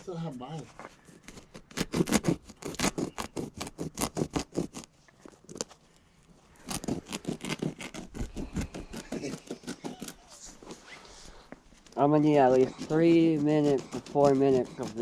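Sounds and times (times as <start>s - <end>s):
carpet being cut by hand: 1.0s - 5.8s, 6.6s - 10.8s, 12.4s - 15.0s.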